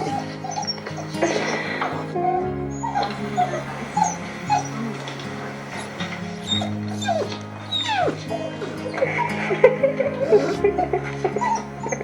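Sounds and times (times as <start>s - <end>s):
dog whining: 0.0s - 12.0s
dogs whimpering and yipping: 0.0s - 12.0s
slow song in background: 0.0s - 12.0s.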